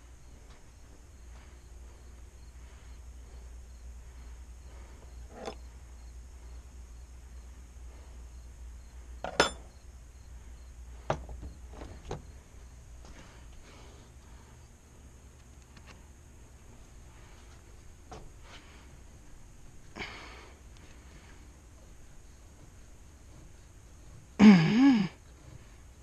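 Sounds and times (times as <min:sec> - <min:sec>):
steady low hum: 0:00.0 - 0:26.0
metal tools clinking: 0:05.3 - 0:05.6, 0:09.3 - 0:09.7.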